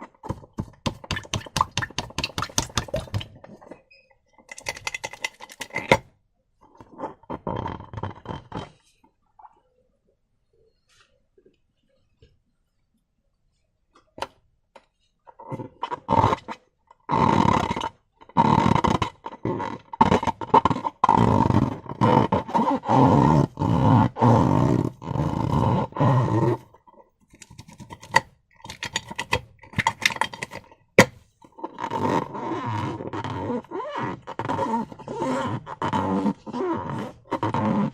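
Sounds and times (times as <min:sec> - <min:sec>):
slime squelching: 0:00.7 - 0:03.8.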